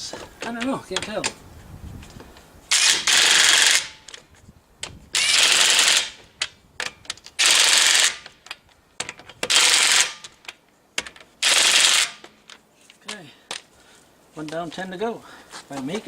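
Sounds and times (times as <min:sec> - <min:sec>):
impact wrench hammering: 0:02.7 - 0:04.1.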